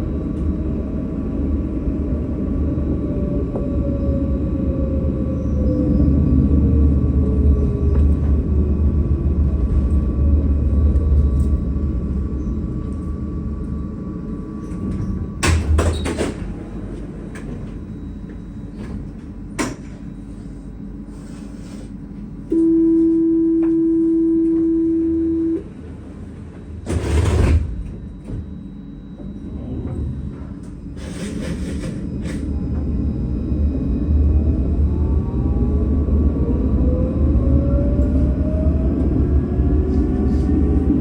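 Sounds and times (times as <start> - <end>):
tram rumble and motor whine: 0.0 - 41.0
tram doors clunking: 7.2 - 20.1, 24.4 - 28.6
warning tone: 22.5 - 25.8.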